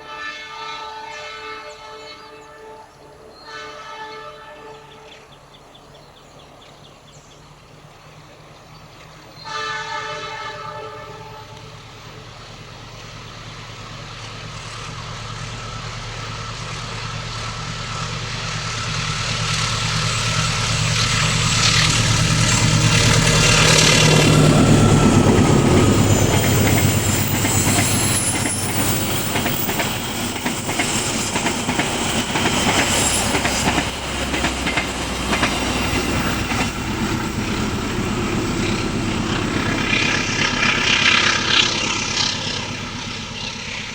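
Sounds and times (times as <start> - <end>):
train horn: 0.0 - 5.4, 9.4 - 12.2
diesel locomotive engine: 0.0 - 43.9
carriages rolling on rails: 5.3 - 43.9.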